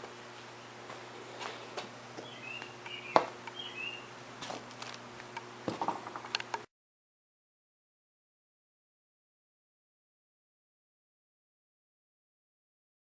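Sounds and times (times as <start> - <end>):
steady low hum: 0.0 - 6.7
birds chirping faintly: 0.6 - 4.2
sharp clicks and knocks: 4.4 - 6.7.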